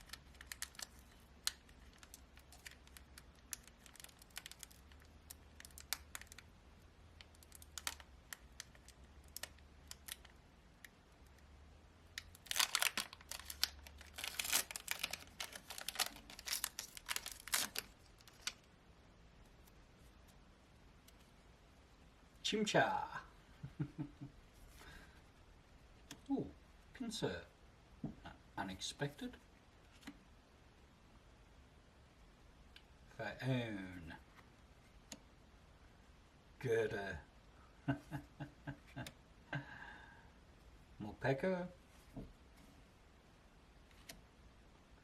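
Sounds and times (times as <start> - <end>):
foil wrapper crinkling and tearing: 0.0 - 6.5, 7.2 - 10.3, 12.2 - 18.7
foil wrapper light crackles: 0.0 - 6.5, 7.2 - 10.4, 12.2 - 18.7.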